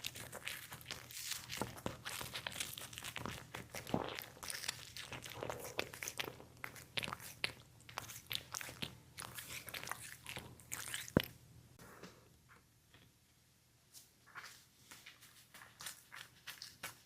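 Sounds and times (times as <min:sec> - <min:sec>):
pet crunching a treat: 0:00.0 - 0:11.4, 0:15.7 - 0:17.0.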